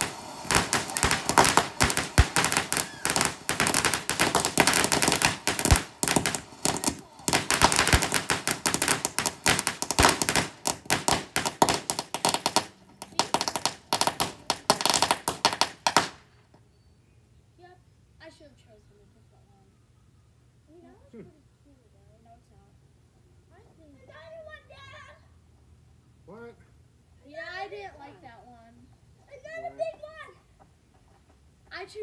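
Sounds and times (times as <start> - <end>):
fireworks popping and crackling: 0.0 - 16.5.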